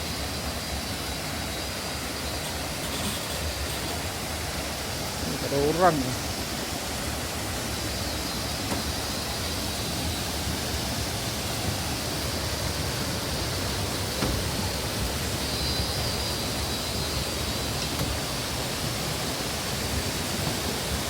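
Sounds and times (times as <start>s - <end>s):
waterfall rushing over rock: 0.0s - 21.0s.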